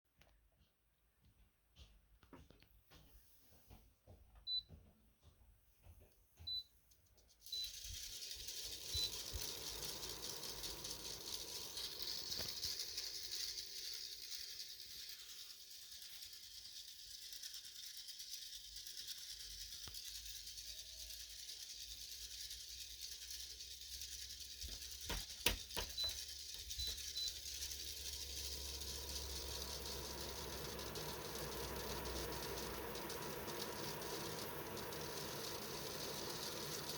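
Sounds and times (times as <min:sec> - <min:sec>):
air purifier fan rattling: 0:07.4 - 0:17.6, 0:21.8 - 0:36.9.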